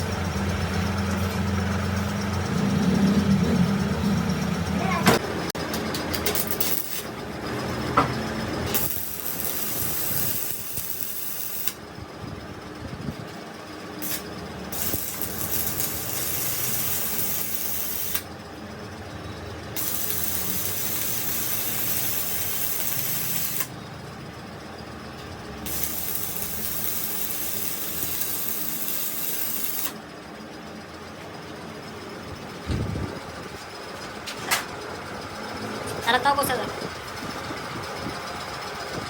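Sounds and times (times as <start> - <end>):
steady low hum: 0.0 - 34.2
loud hiss: 8.8 - 11.8, 14.8 - 18.2, 19.8 - 23.7, 25.7 - 30.0.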